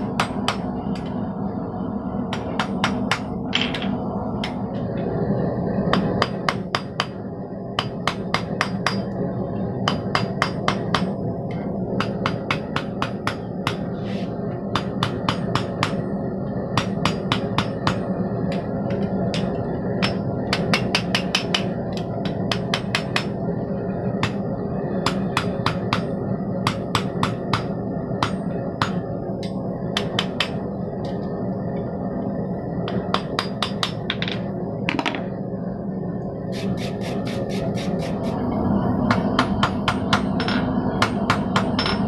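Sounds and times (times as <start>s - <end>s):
hammer striking steel on anvil: 0.0s - 0.6s, 7.8s - 9.1s, 9.8s - 11.1s, 16.7s - 18.6s, 19.3s - 23.4s, 25.0s - 30.6s, 39.1s - 42.0s
steady low hum: 0.0s - 42.0s.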